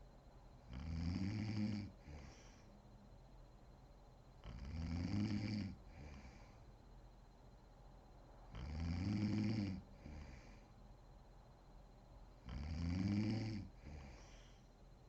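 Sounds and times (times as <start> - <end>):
woman snoring: 0.7 - 2.6, 4.5 - 6.5, 8.6 - 10.6, 12.5 - 14.6
soft breath: 2.0 - 2.9, 5.8 - 6.8, 9.9 - 11.0, 13.7 - 15.0.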